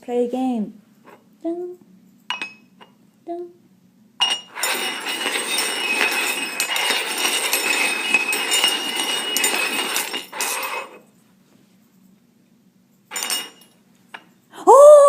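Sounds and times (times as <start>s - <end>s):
dishes clinking and scraping: 2.3s - 3.0s, 4.2s - 11.1s, 13.1s - 14.4s.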